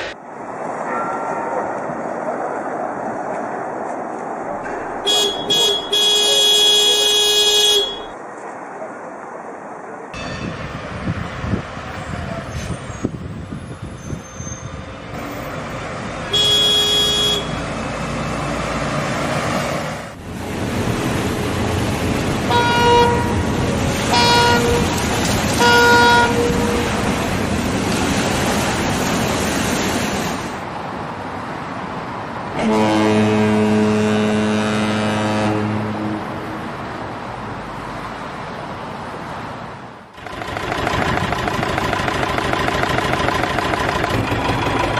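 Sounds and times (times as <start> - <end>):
bus engine and road rumble: 0.0 - 44.9
boat horn toot: 5.1 - 8.1, 16.3 - 17.6, 22.5 - 27.1, 32.6 - 36.3
boat engine and water noise: 20.2 - 31.3, 40.2 - 44.9
knocks and rattles: 40.2 - 44.9.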